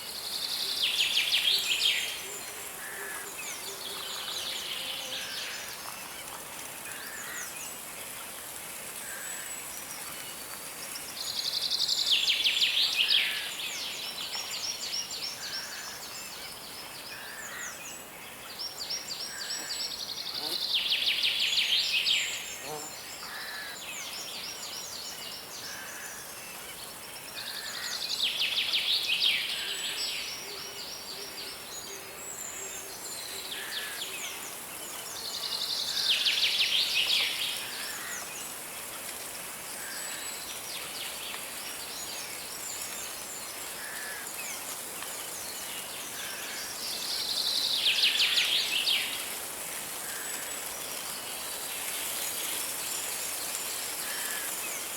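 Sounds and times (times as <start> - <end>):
flowing river water: 0.0 - 15.9, 23.0 - 54.9.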